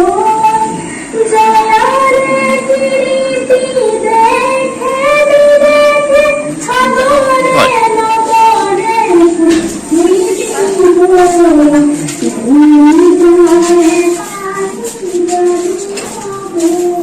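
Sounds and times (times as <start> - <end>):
girl singing: 0.0 - 17.0.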